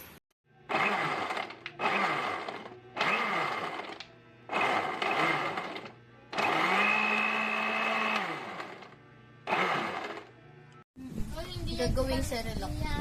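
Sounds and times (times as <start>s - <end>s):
blender motor whirring in bursts: 0.6s - 10.4s.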